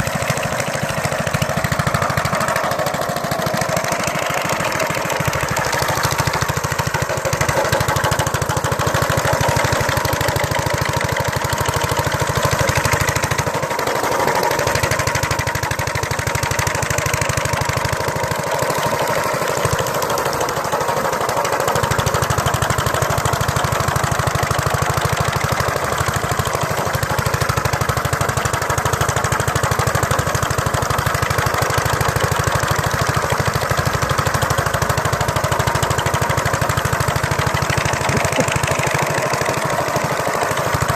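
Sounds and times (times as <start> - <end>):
small engine running: 0.0 - 40.9.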